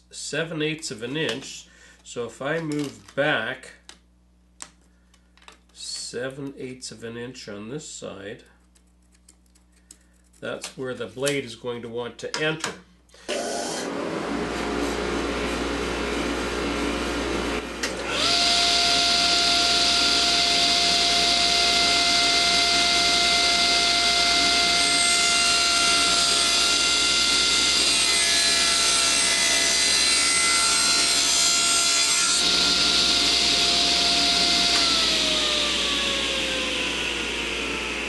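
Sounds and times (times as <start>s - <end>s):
saw blade winding down: 13.3s - 13.9s, 17.9s - 37.9s
table saw cutting board: 13.3s - 38.0s.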